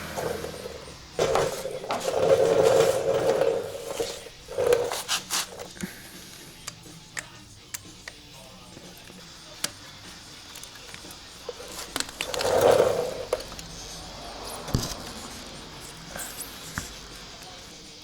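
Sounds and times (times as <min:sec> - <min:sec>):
loud scrape: 0:00.0 - 0:05.7, 0:11.6 - 0:15.4
tools and bike parts clinking: 0:00.0 - 0:05.9, 0:08.8 - 0:17.6.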